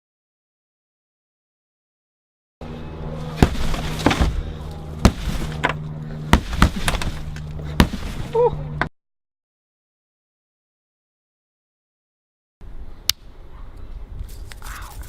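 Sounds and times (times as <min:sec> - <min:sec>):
steady low hum: 0:02.6 - 0:08.9
sharp knocks: 0:03.4 - 0:08.3.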